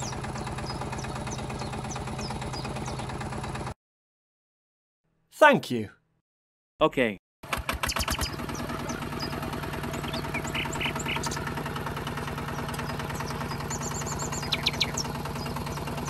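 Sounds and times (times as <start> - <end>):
small motor humming: 0.0 - 3.6, 7.7 - 16.0.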